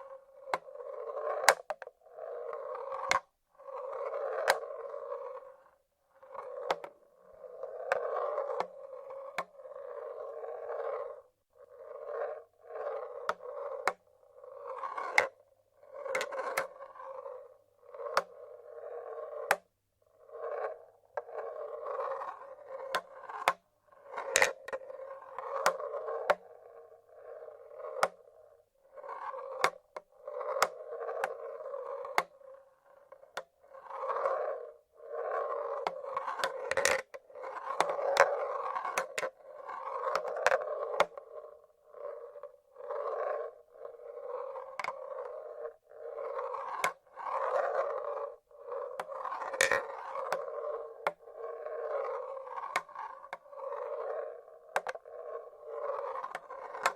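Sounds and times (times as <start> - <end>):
marbles rolling on wooden tracks: 0.1 - 19.6, 20.2 - 56.9
marbles clacking against wood: 48.8 - 51.3, 54.2 - 55.2, 55.8 - 56.9.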